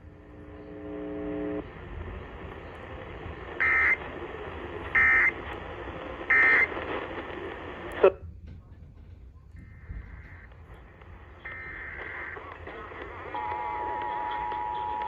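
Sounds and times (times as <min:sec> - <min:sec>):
steady buzzy tone: 0:00.0 - 0:08.1
radio static: 0:00.0 - 0:08.2, 0:09.5 - 0:15.0
digital data bursts: 0:03.1 - 0:04.1, 0:04.8 - 0:05.4, 0:06.2 - 0:06.7, 0:09.6 - 0:15.0.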